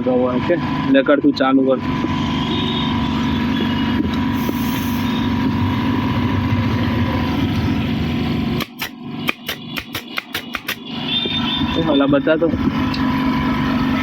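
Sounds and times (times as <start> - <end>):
air compressor running: 1.9 - 12.0, 12.6 - 14.0
pneumatic stapler clacks: 8.6 - 10.9.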